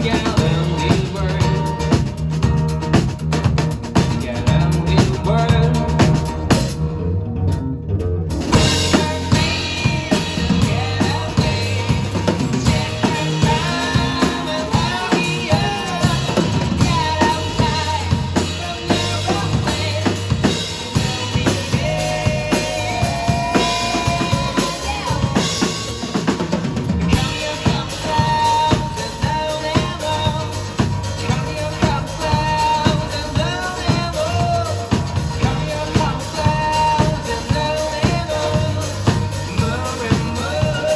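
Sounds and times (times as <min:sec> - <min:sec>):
live rock band playing: 0:00.0 - 0:40.9
snare and kick drum beat: 0:08.5 - 0:40.9.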